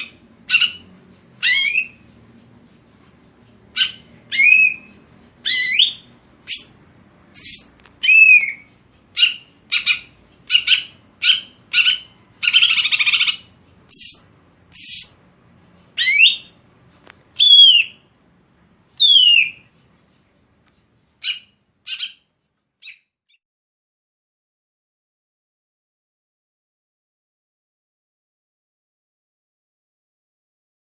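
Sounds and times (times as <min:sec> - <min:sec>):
bird singing chirps and whistles: 0:01.4 - 0:02.0, 0:03.8 - 0:15.2, 0:16.0 - 0:16.6, 0:17.4 - 0:18.0, 0:19.0 - 0:19.7.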